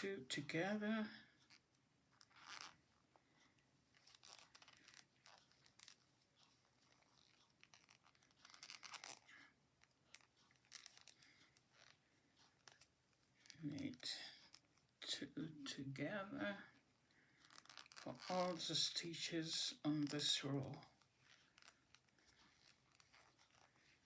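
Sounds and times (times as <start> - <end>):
knitting needles clicking: 3.4 - 14.8, 17.4 - 19.0, 19.6 - 24.0.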